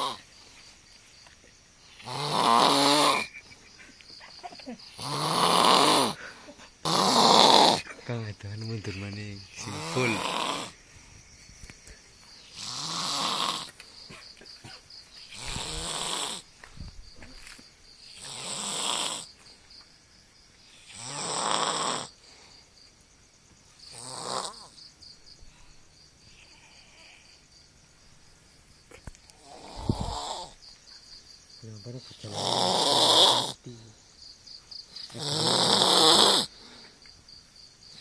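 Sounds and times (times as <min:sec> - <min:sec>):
boy snoring loudly: 0:00.0 - 0:00.2, 0:01.8 - 0:03.3, 0:04.9 - 0:07.9, 0:09.5 - 0:10.8, 0:12.4 - 0:13.8, 0:15.3 - 0:16.5, 0:18.0 - 0:19.4, 0:20.7 - 0:22.2, 0:23.9 - 0:24.8, 0:29.4 - 0:30.6, 0:32.2 - 0:33.6, 0:35.1 - 0:36.6.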